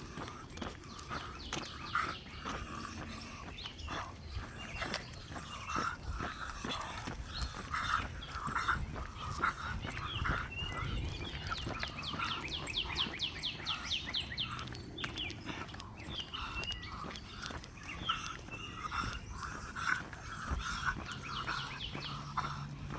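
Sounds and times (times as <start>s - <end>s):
songbirds chirping: 0.0s - 22.9s.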